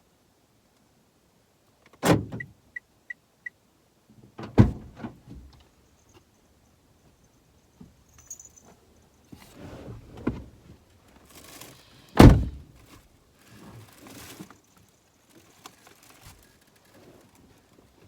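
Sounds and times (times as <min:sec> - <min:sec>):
rustling: 0:08.1 - 0:18.0.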